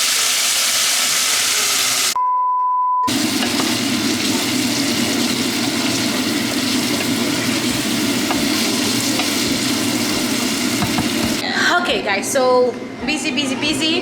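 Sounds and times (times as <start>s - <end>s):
beans sizzling in hot oil: 0.0s - 2.2s, 3.1s - 11.4s.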